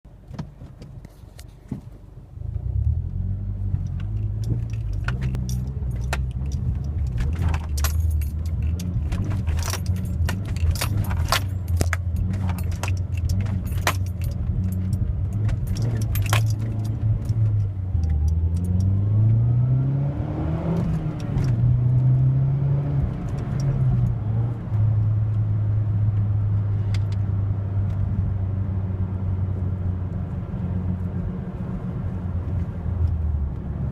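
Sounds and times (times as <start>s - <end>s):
car engine starting and idling: 0.1s - 33.9s
engine revving: 2.6s - 30.0s
keys jingling: 4.1s - 18.9s.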